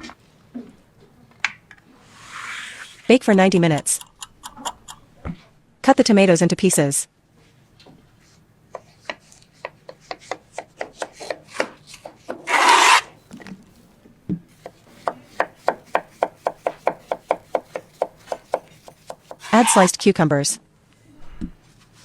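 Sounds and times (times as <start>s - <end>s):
knife chopping on cutting board: 8.7s - 13.0s, 14.5s - 19.9s.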